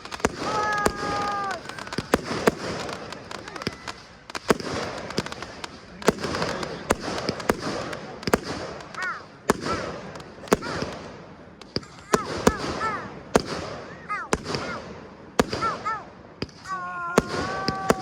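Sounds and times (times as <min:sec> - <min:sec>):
firework bangs: 0:00.0 - 0:18.0
firework crackling: 0:00.0 - 0:18.0.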